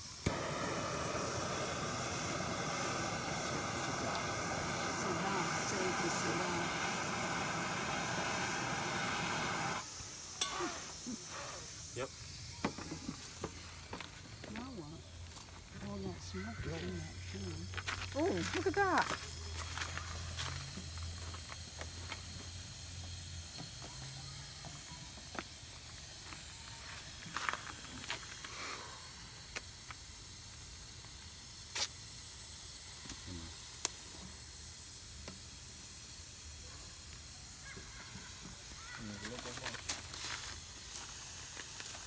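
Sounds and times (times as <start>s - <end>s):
faint hiss of smoke: 0.0s - 42.0s.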